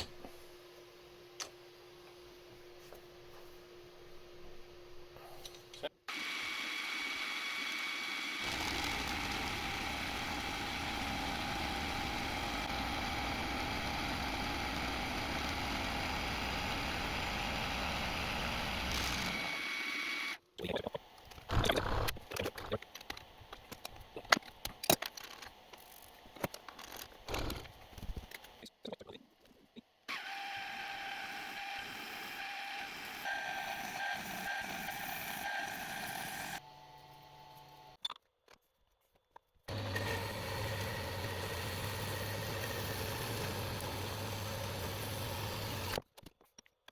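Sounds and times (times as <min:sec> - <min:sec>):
milling machine whining: 0:06.1 - 0:20.4, 0:30.1 - 0:36.7, 0:39.7 - 0:46.0.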